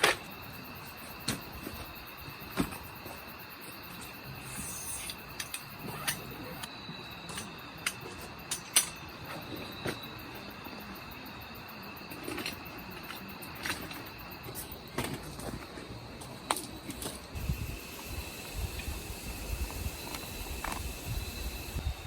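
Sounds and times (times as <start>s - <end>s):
insects chirring: 0.0s - 22.0s.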